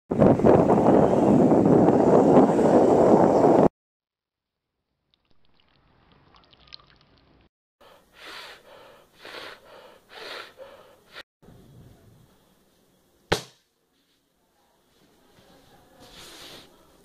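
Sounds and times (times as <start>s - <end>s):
person gasping: 7.8s - 11.2s.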